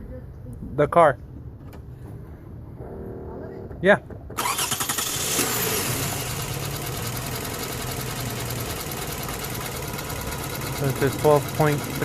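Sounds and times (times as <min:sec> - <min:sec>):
car engine starting and idling: 0:04.2 - 0:12.0.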